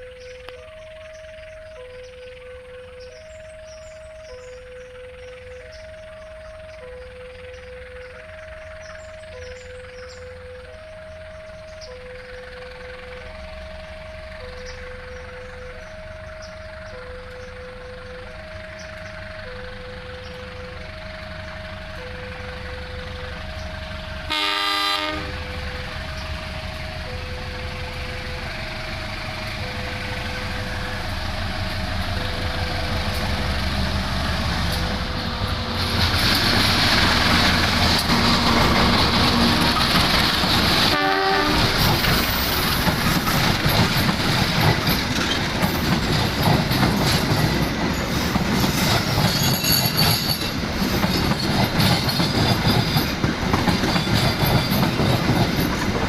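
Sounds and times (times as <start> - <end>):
two-tone warning signal: 0.0 - 35.8, 37.3 - 50.5
train rumble: 0.0 - 56.0
wheels clacking over rails: 12.3 - 56.0
train horn: 23.8 - 30.4, 35.5 - 42.5.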